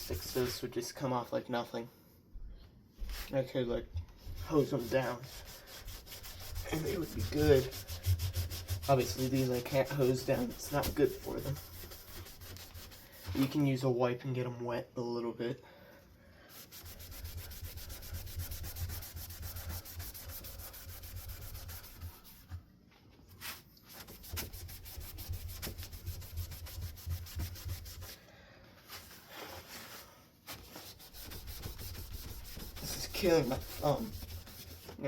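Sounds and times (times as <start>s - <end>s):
wet wipe rubbing fan blade: 4.3s - 13.6s, 16.6s - 22.4s, 30.8s - 35.0s.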